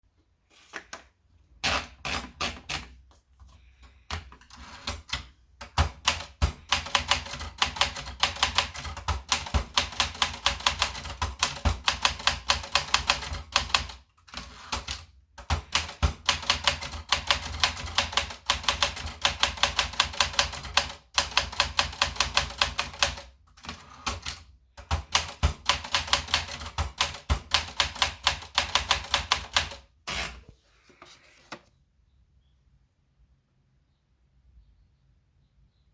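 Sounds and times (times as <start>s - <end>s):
typewriter keys clacking: 4.0s - 30.4s.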